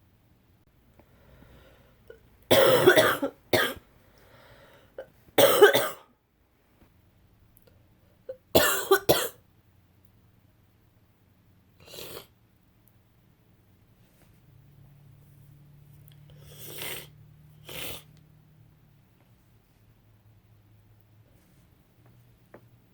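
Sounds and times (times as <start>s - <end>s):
faint breathing: 1.0s - 2.2s, 4.0s - 5.0s.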